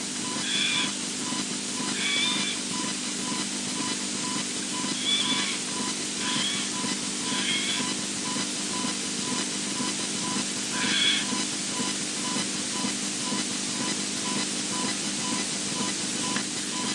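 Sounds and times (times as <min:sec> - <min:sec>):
animal high call: 0:00.4 - 0:01.0, 0:01.8 - 0:02.7, 0:04.8 - 0:08.0, 0:10.7 - 0:11.4.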